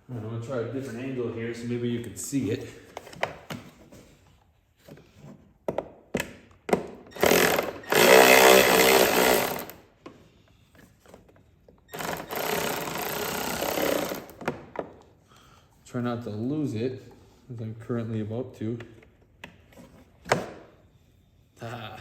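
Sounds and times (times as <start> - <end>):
power drill driving screws: 7.1 - 9.8, 11.9 - 14.4.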